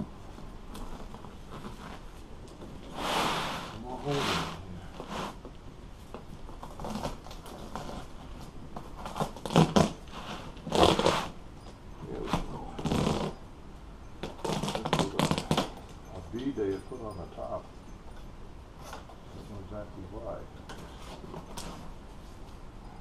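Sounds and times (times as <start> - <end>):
vinyl and fabric tearing: 6.6 - 11.4, 12.3 - 13.4, 14.4 - 15.7.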